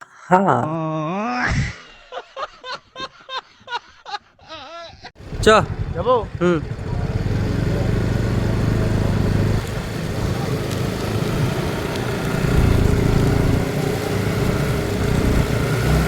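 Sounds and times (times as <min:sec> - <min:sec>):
motorcycle engine running: 0:05.2 - 0:16.0.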